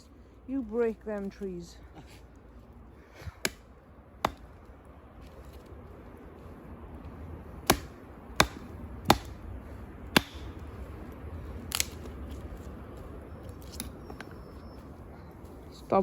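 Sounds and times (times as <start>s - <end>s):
wooden branches cracking: 11.7s - 12.8s.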